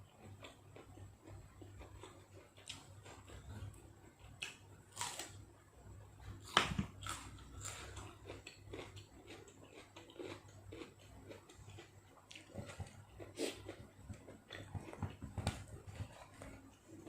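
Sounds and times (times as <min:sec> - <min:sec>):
person crunching and chewing food: 0:00.0 - 0:05.5, 0:06.2 - 0:17.0.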